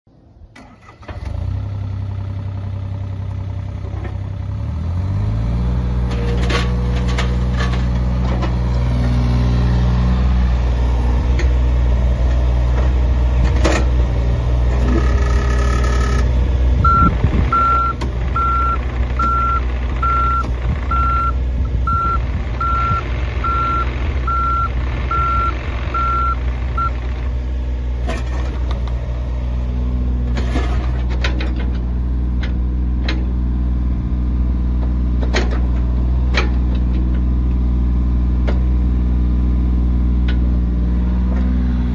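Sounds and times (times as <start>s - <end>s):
excavator diesel engine running: 0.1s - 41.9s
travel alarm beeping: 16.9s - 26.9s.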